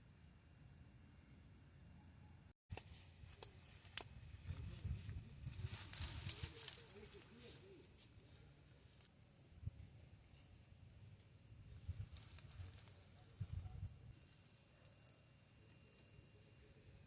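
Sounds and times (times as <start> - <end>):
crickets trilling: 0.0 - 17.0.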